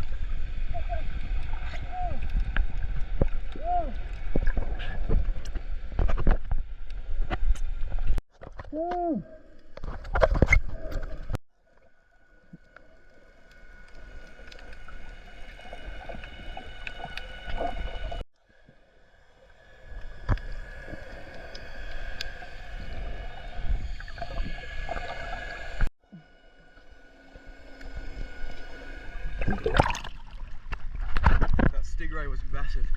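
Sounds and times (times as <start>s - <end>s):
crackling underwater noise: 0.0s - 32.9s
faint steady whine: 11.9s - 30.5s.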